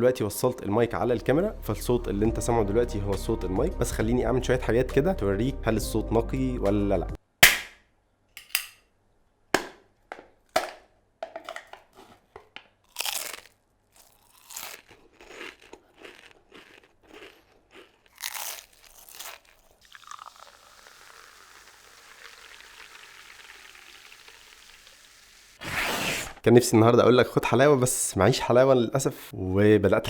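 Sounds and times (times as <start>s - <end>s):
potato chips crunched and chewed: 12.8s - 23.8s
faint steady hiss: 19.8s - 25.6s.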